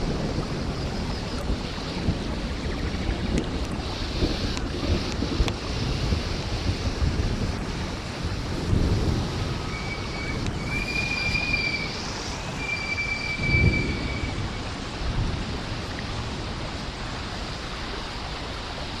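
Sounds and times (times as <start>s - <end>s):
heavy rain hissing: 0.0s - 19.0s
wind buffeting microphone: 0.0s - 19.0s
short high whistling tones: 9.7s - 14.4s.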